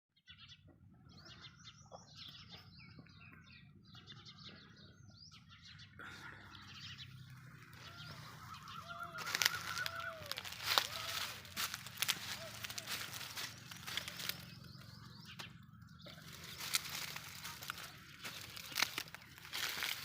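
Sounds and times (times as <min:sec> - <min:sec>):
birds honking: 0:06.0 - 0:20.0
drawn-out arching bird calls: 0:06.6 - 0:20.0.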